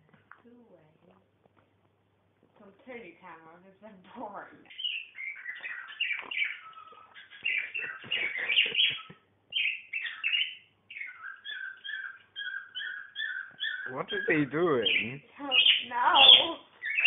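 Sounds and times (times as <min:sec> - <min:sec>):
budgie chirping and chattering: 0:04.7 - 0:17.0.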